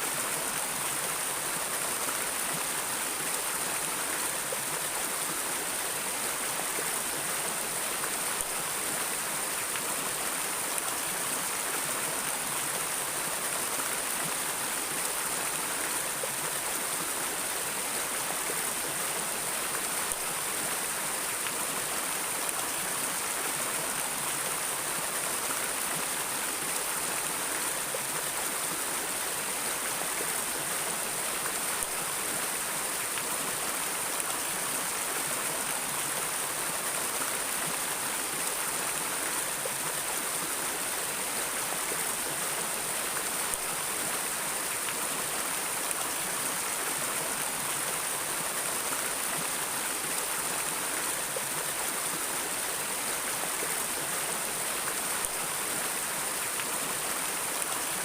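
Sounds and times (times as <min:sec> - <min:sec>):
stream water flowing: 0:00.0 - 0:58.0.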